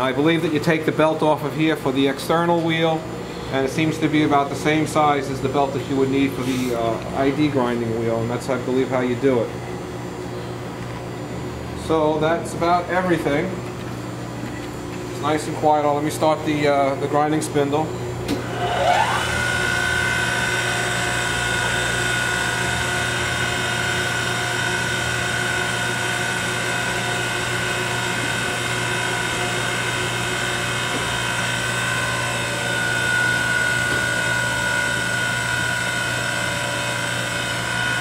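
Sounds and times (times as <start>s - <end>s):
machine hum: 0.0s - 38.0s
grinding wheel spindle whine: 18.4s - 38.0s.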